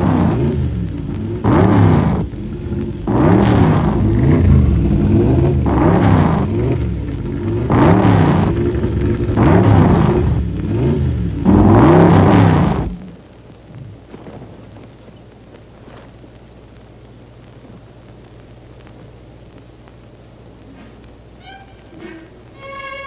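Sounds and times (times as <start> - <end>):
racing car engine revving: 0.0 - 13.2.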